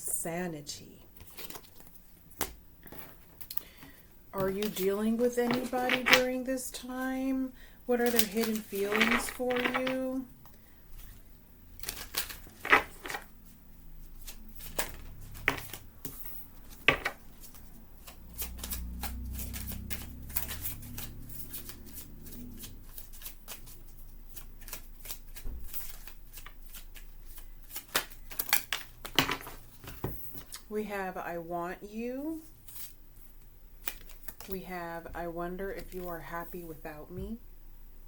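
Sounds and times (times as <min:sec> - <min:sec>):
cards being shuffled: 0:04.4 - 0:06.4, 0:07.9 - 0:10.2, 0:11.8 - 0:13.3, 0:14.2 - 0:30.6, 0:33.8 - 0:34.5.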